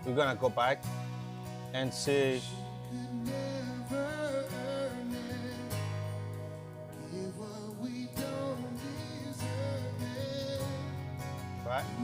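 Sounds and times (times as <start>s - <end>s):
strummed acoustic guitar: 0.0s - 12.0s
person singing: 2.4s - 6.2s, 7.0s - 11.1s.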